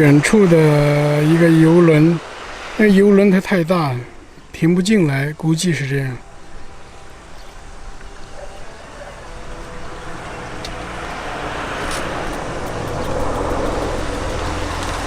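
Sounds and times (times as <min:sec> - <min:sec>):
vehicle engine and tyre noise: 0:00.0 - 0:04.6, 0:06.2 - 0:15.0.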